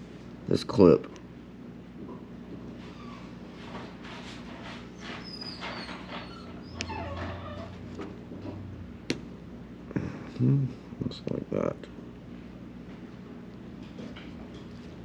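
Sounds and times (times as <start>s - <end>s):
dog whimpering: 2.8s - 3.6s, 4.9s - 7.8s.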